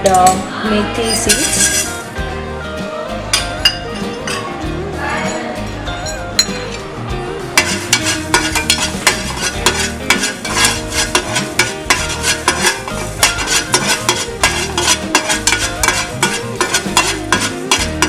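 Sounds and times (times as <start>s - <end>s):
utensil scraping a pan: 1.0s - 2.1s, 7.6s - 18.0s
seeds rattling in a pan: 7.6s - 17.9s.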